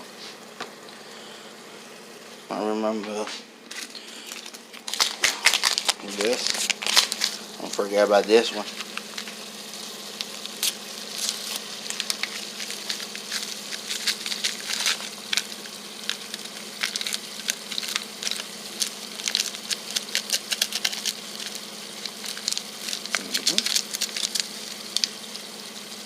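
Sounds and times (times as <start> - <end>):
food sizzling in a pan: 5.0 - 8.1, 8.7 - 26.0.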